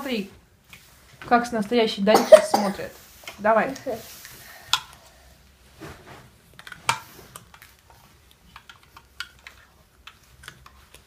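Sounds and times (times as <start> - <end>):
plastic toy tools clicking: 6.6 - 11.0.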